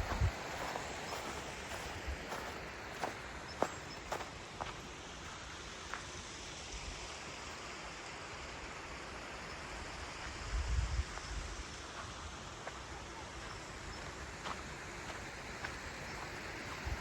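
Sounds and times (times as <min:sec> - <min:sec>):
wind rumble on microphone: 0:00.0 - 0:02.4, 0:10.1 - 0:12.3, 0:15.8 - 0:17.0
flowing water rushing: 0:00.0 - 0:09.4.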